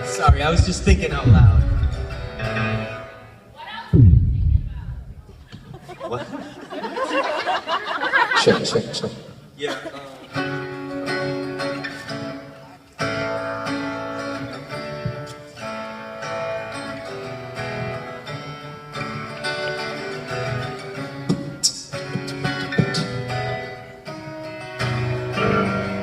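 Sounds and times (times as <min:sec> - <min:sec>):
music playing: 0:00.0 - 0:03.4
guitar strumming chords: 0:00.0 - 0:05.7, 0:10.4 - 0:26.0.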